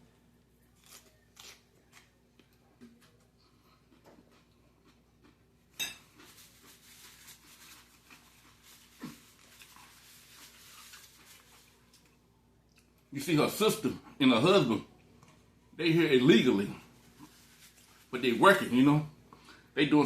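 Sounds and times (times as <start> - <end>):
soft crackly chewing: 0.0 - 13.2, 14.8 - 15.8, 16.8 - 18.2
food handling sounds: 0.7 - 13.0, 16.8 - 19.7.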